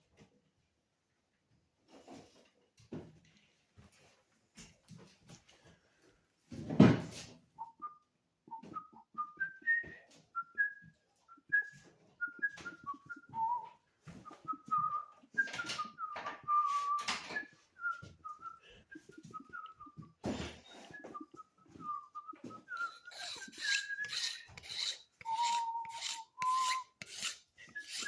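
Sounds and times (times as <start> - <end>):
person whistling a tune: 7.6 - 27.0, 27.6 - 28.0
clicks and scrapes: 19.0 - 28.0.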